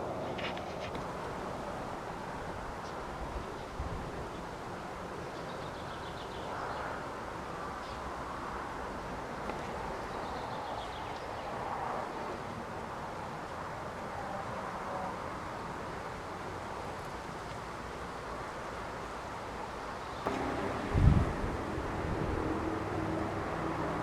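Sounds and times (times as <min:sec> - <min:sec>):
outdoor background noise: 0:00.0 - 0:24.0
small birds singing: 0:05.2 - 0:07.0, 0:09.9 - 0:12.3.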